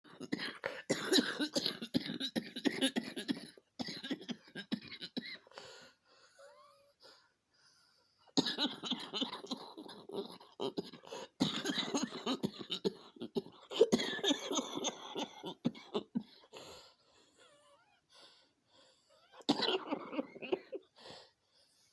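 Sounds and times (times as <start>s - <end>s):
woman coughing: 0.1s - 5.5s, 8.4s - 16.4s, 19.4s - 20.9s.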